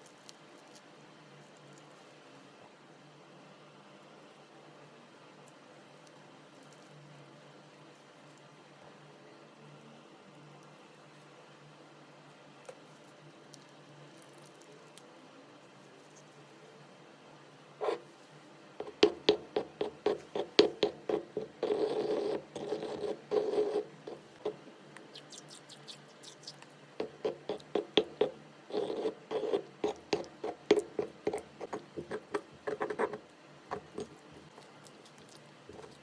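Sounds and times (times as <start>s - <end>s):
slime rubbing: 25.2s - 36.0s.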